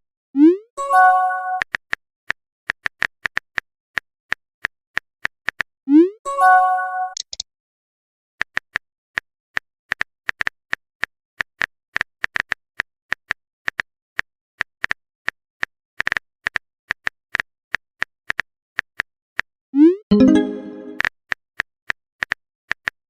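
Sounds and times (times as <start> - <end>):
typing clicks: 7.1 - 7.4.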